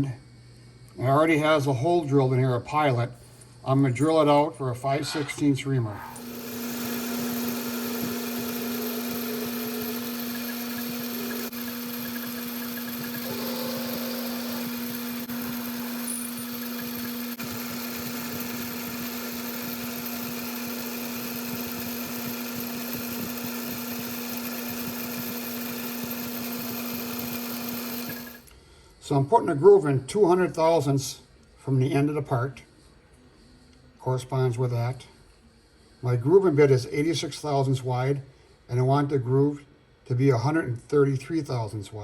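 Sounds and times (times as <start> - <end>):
hiss of metal cutting: 4.9 - 16.8
metal lathe humming: 4.9 - 28.4.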